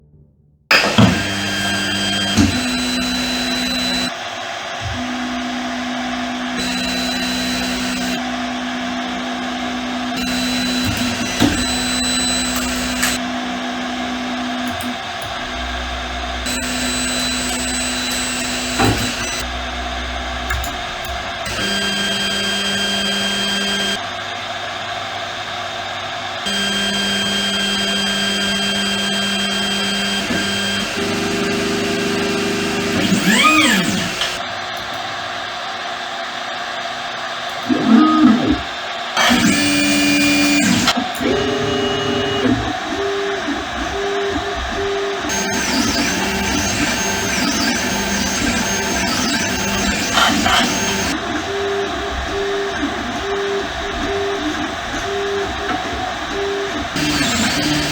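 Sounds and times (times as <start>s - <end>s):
printer knock: 0.7s - 1.6s
stepper motors whining: 0.7s - 24.1s, 26.3s - 35.0s, 37.5s - 57.9s.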